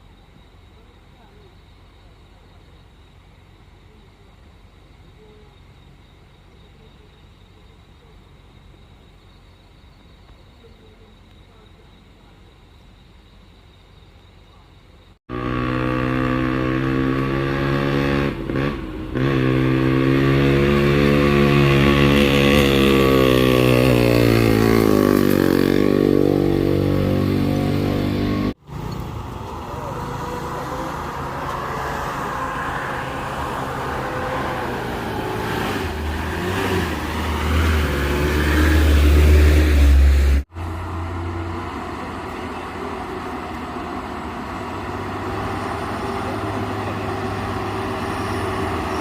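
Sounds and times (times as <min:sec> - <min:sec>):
engine running at high revs: 0:15.3 - 0:49.0.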